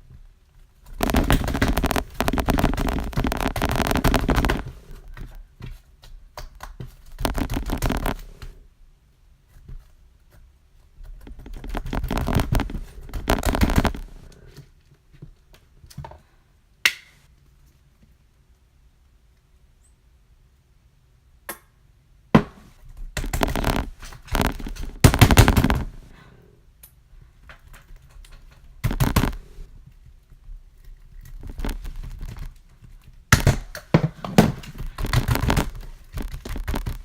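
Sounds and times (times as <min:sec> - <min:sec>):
slime crackling and popping: 0:00.8 - 0:05.0, 0:06.4 - 0:08.6, 0:11.3 - 0:14.4, 0:23.2 - 0:26.1, 0:28.8 - 0:29.6, 0:31.0 - 0:37.0.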